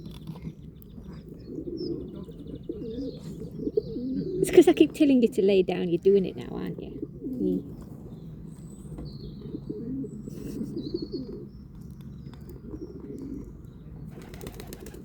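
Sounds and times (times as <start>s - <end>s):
doves cooing: 0.0s - 11.6s, 12.4s - 15.0s.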